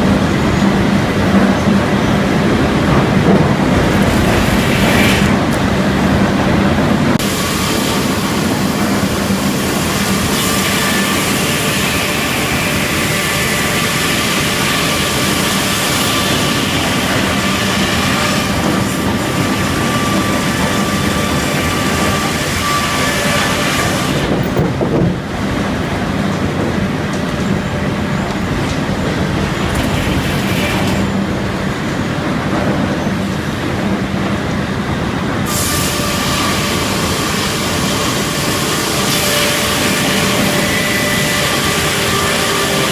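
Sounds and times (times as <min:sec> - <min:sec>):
sawmill cutting log: 0:02.4 - 0:06.2, 0:07.2 - 0:25.1, 0:29.6 - 0:31.2, 0:35.4 - 0:42.9.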